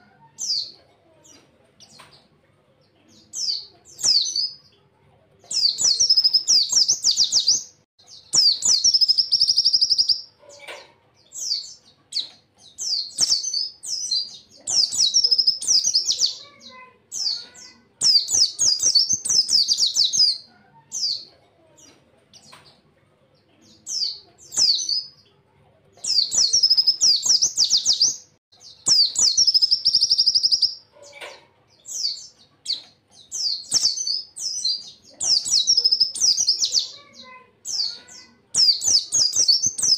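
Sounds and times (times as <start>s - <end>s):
bird twittering song: 0.0s - 25.4s, 26.0s - 39.9s.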